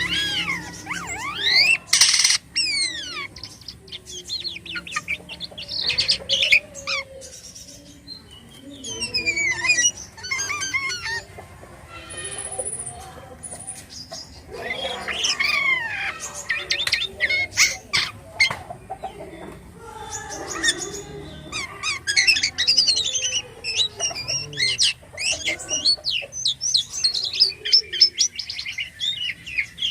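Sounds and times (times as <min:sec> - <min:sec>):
starling singing: 0:00.0 - 0:29.9.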